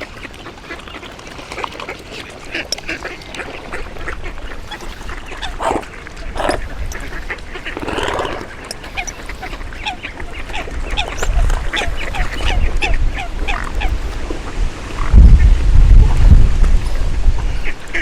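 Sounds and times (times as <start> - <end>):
ducks quacking: 0.0 - 14.2
wind rumbling on microphone: 2.9 - 18.0.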